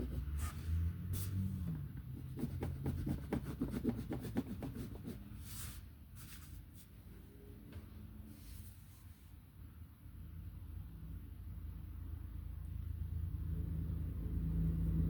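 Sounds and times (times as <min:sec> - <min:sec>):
colouring tool scratching paper: 0:00.0 - 0:01.4, 0:02.1 - 0:06.5.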